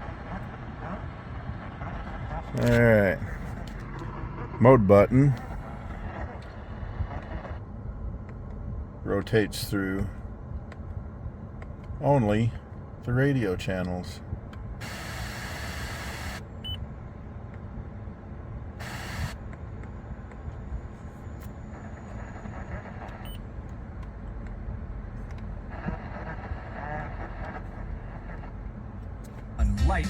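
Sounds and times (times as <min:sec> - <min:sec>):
radio static hiss: 0:00.0 - 0:07.6, 0:14.8 - 0:16.5, 0:18.8 - 0:19.4, 0:21.3 - 0:23.2, 0:25.6 - 0:28.7
faint radio station audio: 0:00.0 - 0:07.8, 0:11.8 - 0:16.8, 0:18.8 - 0:30.0.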